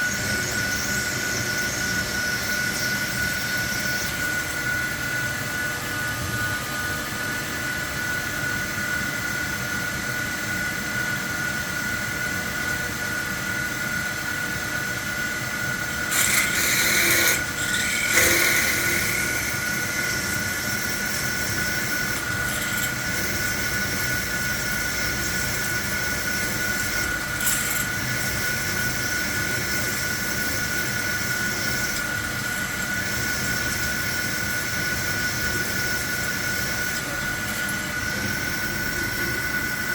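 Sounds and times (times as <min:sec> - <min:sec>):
machine spindle whine: 0:00.0 - 0:39.9
drilling cutting noise: 0:15.6 - 0:39.9.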